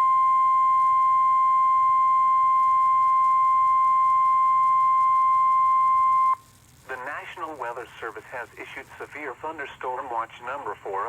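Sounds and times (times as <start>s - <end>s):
steady electronic alarm tone: 0.0s - 6.5s.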